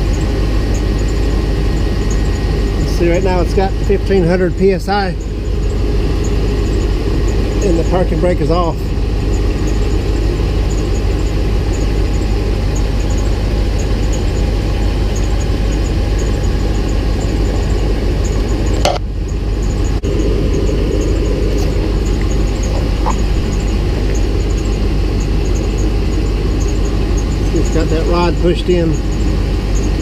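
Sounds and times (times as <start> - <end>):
vehicle engine idling: 0.0 - 30.0
faint high ticking: 9.2 - 30.0.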